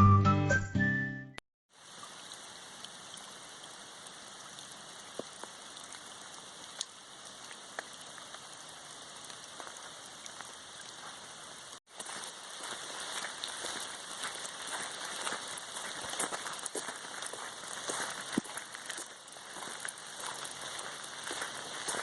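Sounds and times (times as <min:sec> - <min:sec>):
raindrops ticking close by: 0:01.7 - 0:22.0
steady rain falling: 0:01.7 - 0:22.0.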